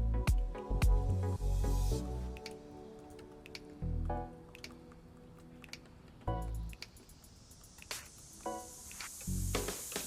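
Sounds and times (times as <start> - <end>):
background music with bass: 0.0 - 2.5, 6.3 - 6.8, 9.3 - 10.0.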